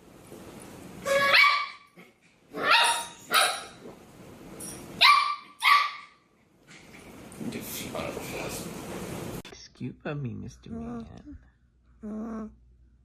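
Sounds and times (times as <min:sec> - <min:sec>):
dog barking: 0:01.2 - 0:01.9, 0:02.6 - 0:03.8, 0:05.0 - 0:06.2.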